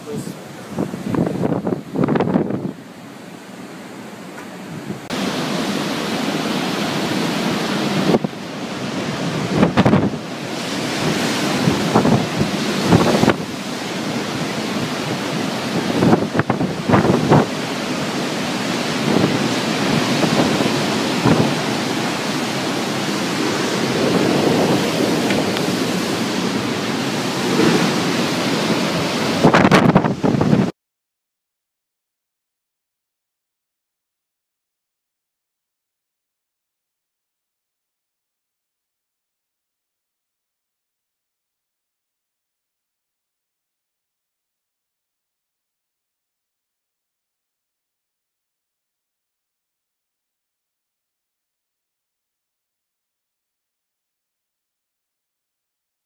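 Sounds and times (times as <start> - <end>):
wind gusts thumping microphone: 0.0 - 3.4, 4.4 - 30.7
rushing water: 0.0 - 30.7
strong wind blowing: 0.0 - 30.7.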